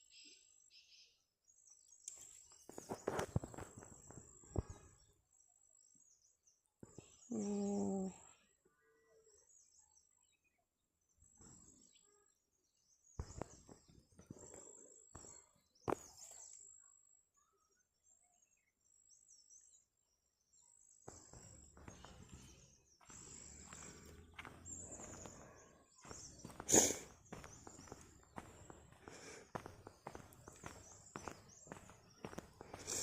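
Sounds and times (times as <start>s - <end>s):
small bird chirps: 0.0s - 33.0s.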